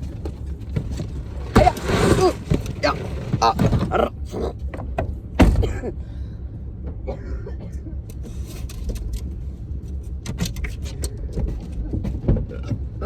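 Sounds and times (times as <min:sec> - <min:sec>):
vehicle road rumble: 0:00.0 - 0:13.0
light clicks and rattles: 0:08.0 - 0:13.0.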